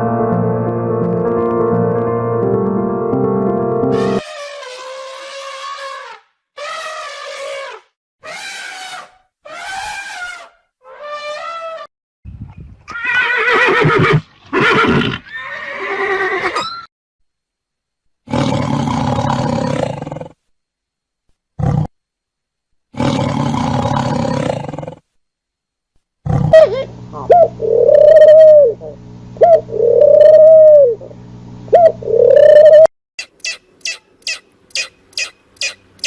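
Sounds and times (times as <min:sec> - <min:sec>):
harsh animal calls: 0:04.2 - 0:11.9, 0:26.3 - 0:31.0
rising and falling animal calls: 0:04.2 - 0:11.9, 0:26.4 - 0:31.1, 0:31.7 - 0:36.0
steady low hum: 0:23.8 - 0:36.0.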